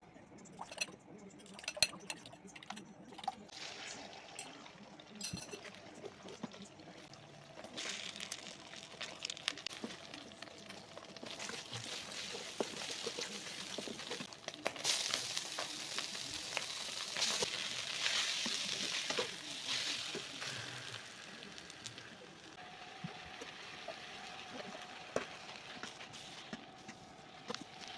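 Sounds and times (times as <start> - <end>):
stirring clicks and scrapes: 5.2 - 22.0
food sizzling in a pan: 7.6 - 26.6.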